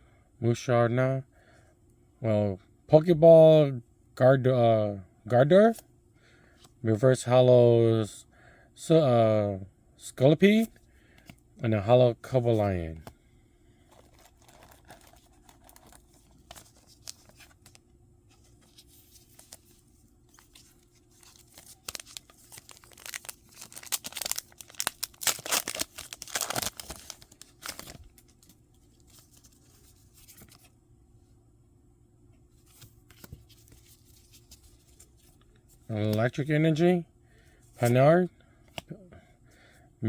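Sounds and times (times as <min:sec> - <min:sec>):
foil wrapper tearing and crinkling: 0:13.9 - 0:17.8, 0:20.3 - 0:29.5.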